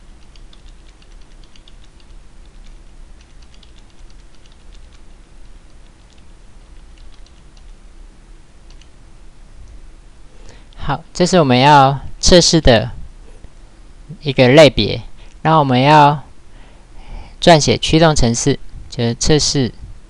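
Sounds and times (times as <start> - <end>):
computer keyboard typing: 0.0 - 7.8, 8.7 - 8.9
low steady hum: 0.0 - 20.0.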